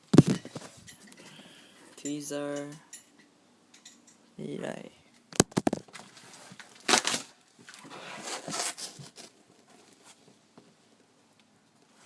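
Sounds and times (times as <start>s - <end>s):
box and packaging handled: 5.4s - 10.2s.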